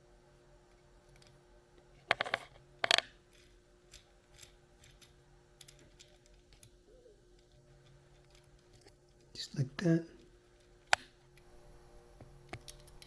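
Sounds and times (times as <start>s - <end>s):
small hard parts clicking: 2.1s - 6.8s, 12.5s - 13.0s.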